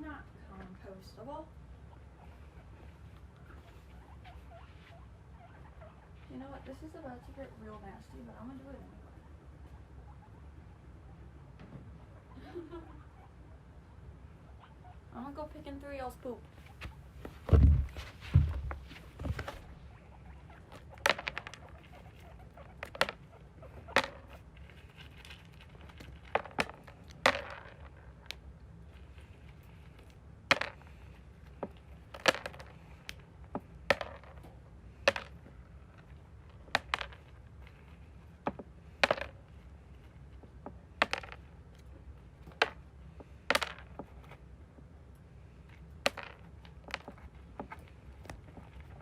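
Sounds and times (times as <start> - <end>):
low steady background noise: 0.0 - 49.0.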